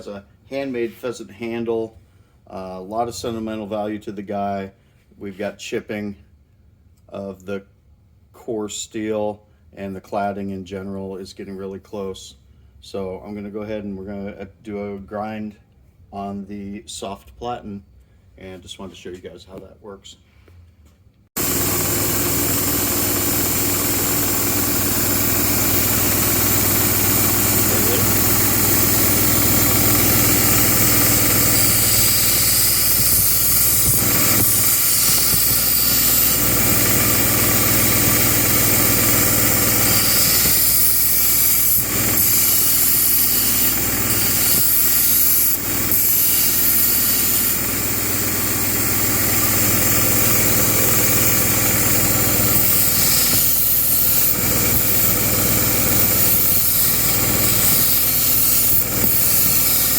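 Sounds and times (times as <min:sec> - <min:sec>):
belt grinder grinding steel: 0:21.4 - 0:59.9.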